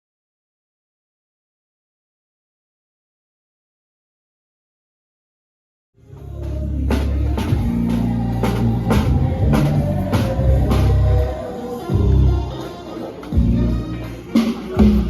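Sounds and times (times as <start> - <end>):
drum kit beat: 6.0 - 15.0
guitar: 6.0 - 15.0
electric bass notes: 6.1 - 12.5.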